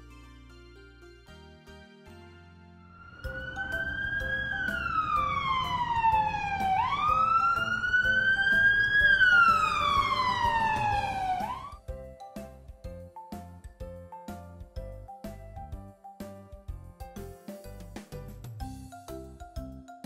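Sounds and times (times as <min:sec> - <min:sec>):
low vehicle rumble: 0:02.9 - 0:11.8
police siren wailing: 0:02.9 - 0:11.8.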